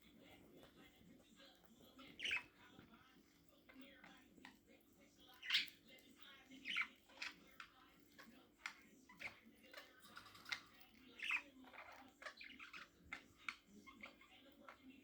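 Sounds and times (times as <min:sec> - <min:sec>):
budgerigars chirping: 0:02.0 - 0:02.5, 0:05.4 - 0:05.8, 0:06.6 - 0:07.4, 0:09.1 - 0:14.7.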